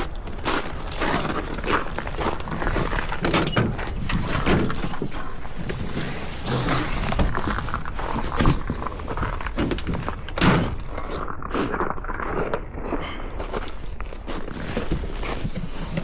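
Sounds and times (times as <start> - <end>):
scraping rustle: 0.0 - 11.3, 13.4 - 16.0
knocks and thuds of tools: 8.4 - 10.9.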